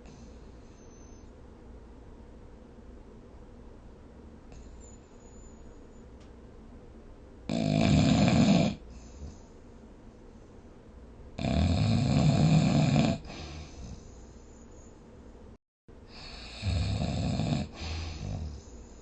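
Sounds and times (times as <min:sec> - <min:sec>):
quiet breathing: 0:00.0 - 0:01.4, 0:04.5 - 0:06.2, 0:08.8 - 0:10.9, 0:13.2 - 0:15.3, 0:17.6 - 0:19.0
loud snores: 0:07.5 - 0:08.9, 0:11.4 - 0:14.0, 0:16.1 - 0:18.7.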